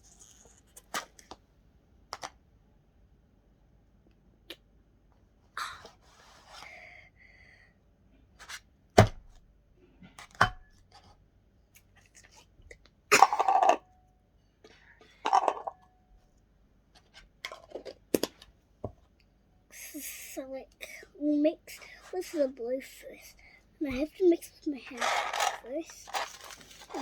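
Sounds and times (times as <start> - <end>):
containers knocking and clicking: 15.0 - 15.9, 24.8 - 27.0
packaging rustling: 24.9 - 27.0.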